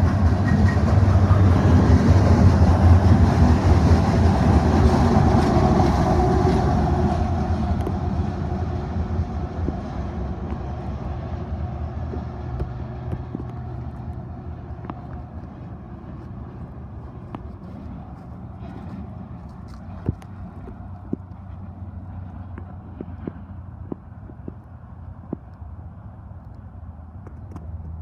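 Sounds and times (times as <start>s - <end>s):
freight train rumbling on rails: 0.0s - 26.3s.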